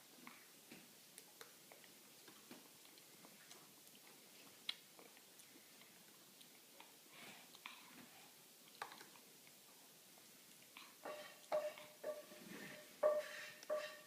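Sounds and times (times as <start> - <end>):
chewing with wet mouth clicks: 1.1 - 7.9, 8.6 - 11.6.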